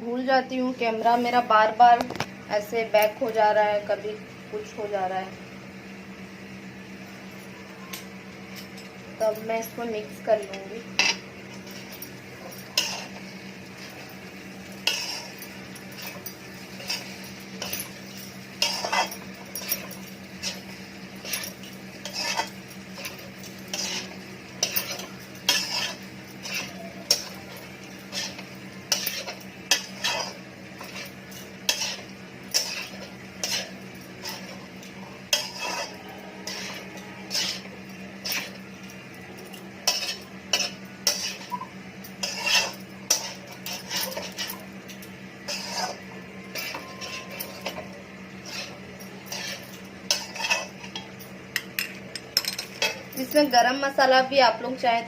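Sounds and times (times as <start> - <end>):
steady low hum: 0.0 - 55.0
metal spoon scraping iron griddle: 10.4 - 51.1.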